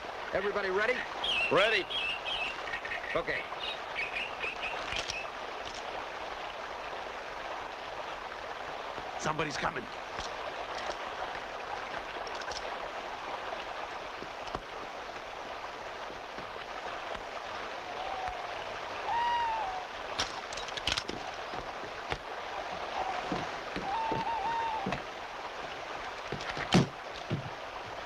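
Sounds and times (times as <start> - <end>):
stream flowing: 0.0 - 28.0
wavering call: 17.8 - 20.0, 22.8 - 25.0.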